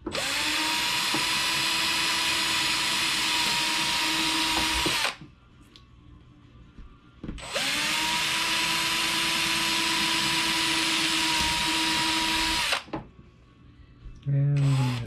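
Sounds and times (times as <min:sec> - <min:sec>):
power drill drilling plastic: 0:00.1 - 0:05.2, 0:07.5 - 0:12.9, 0:14.6 - 0:15.0.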